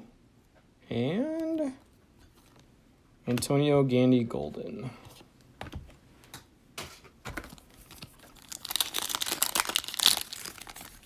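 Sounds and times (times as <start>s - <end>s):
plastic wrapper crinkling: 7.4s - 11.0s.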